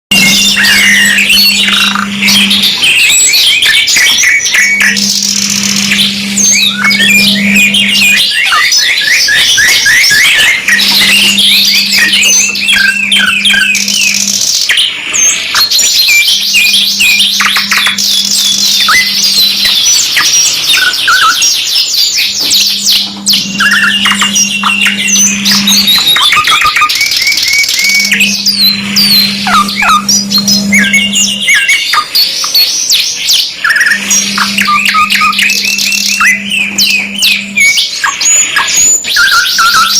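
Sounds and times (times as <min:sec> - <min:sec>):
low steady hum: 0:00.1 - 0:03.3, 0:04.5 - 0:08.2, 0:10.5 - 0:14.4, 0:22.8 - 0:26.2, 0:27.8 - 0:31.6, 0:33.8 - 0:37.8
canaries singing trills: 0:00.1 - 0:39.9.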